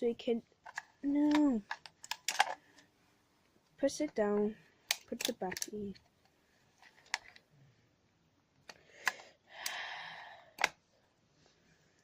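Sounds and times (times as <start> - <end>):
plastic clicks of batteries: 0.6 - 2.8, 4.9 - 6.0, 10.6 - 10.8
soft breathy rush: 8.8 - 10.6.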